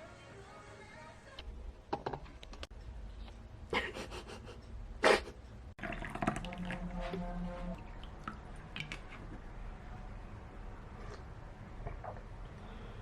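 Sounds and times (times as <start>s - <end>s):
running water: 5.8s - 9.4s.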